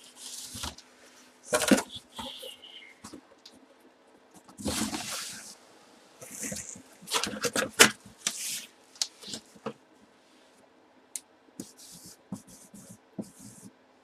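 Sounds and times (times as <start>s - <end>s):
boxes knocking and rustling: 1.5s - 2.4s, 4.4s - 5.4s.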